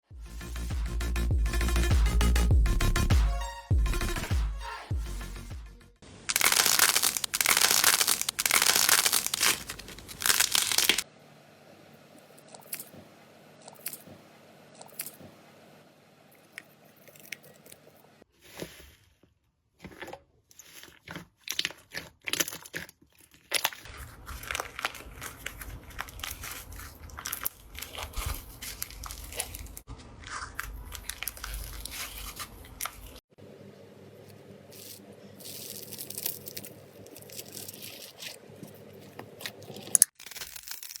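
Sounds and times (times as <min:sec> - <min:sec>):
slime crackling and clicking: 0:06.3 - 0:11.0.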